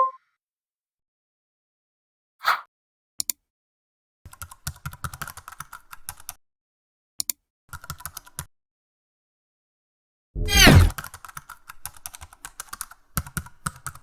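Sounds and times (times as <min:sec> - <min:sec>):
typing on computer keyboard: 0:04.3 - 0:06.4, 0:07.7 - 0:08.4, 0:11.0 - 0:14.0.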